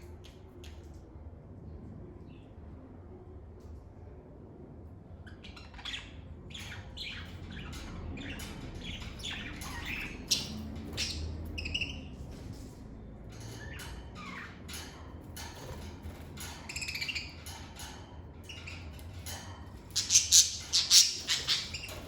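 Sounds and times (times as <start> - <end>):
faint low hum: 0.0 - 22.0
lovebirds chirping: 5.5 - 12.2, 19.9 - 22.0.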